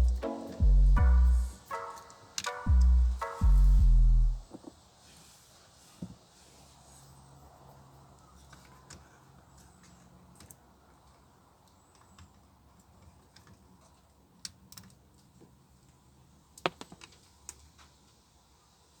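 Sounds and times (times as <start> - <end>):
faint low hum: 0.0 - 1.6, 2.7 - 4.5.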